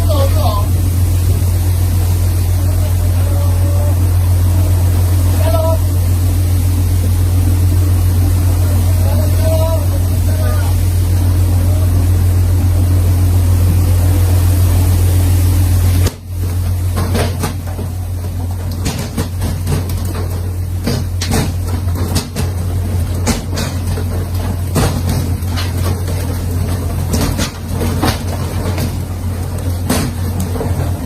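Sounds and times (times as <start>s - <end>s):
boat engine humming: 0.0s - 31.0s
sharp knocks and clatter: 16.9s - 31.0s.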